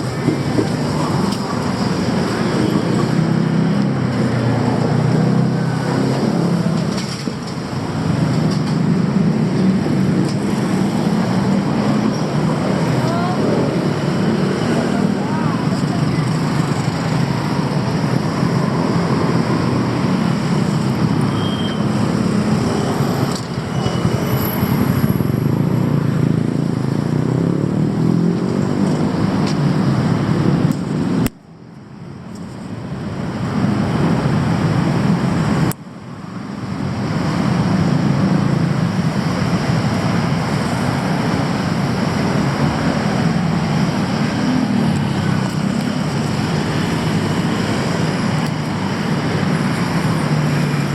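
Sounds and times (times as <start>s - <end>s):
passing car engines: 0.0s - 31.3s
passing motorbike engines: 0.0s - 31.3s, 32.2s - 50.9s
city street traffic: 0.0s - 50.9s.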